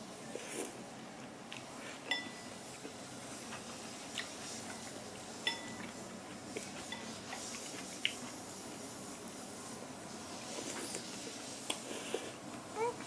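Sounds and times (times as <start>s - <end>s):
cutlery clinking against a bowl: 2.0s - 2.5s, 4.2s - 6.0s, 6.7s - 7.7s.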